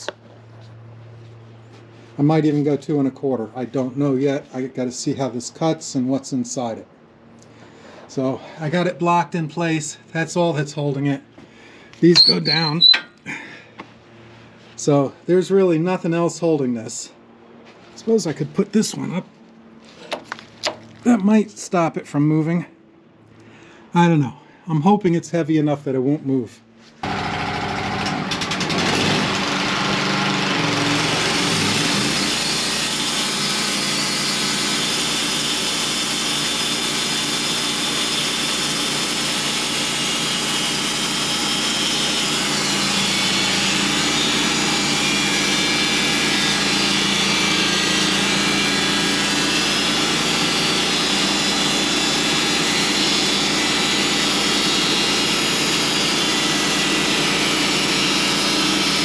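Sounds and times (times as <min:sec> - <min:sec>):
saw blade cutting log: 0:12.0 - 0:13.1, 0:27.0 - 0:59.0
sawmill engine revving: 0:27.0 - 0:59.0.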